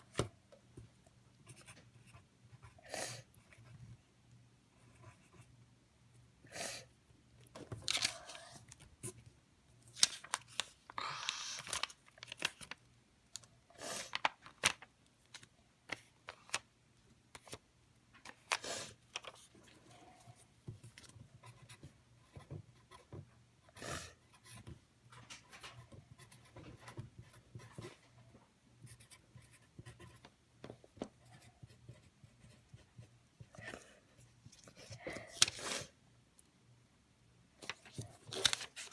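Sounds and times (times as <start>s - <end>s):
slime stretching and tearing: 11.0s - 11.9s.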